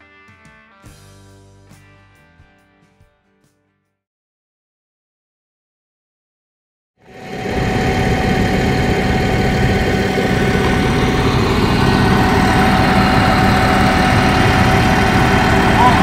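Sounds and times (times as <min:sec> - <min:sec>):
engine humming steadily: 0:07.1 - 0:16.0.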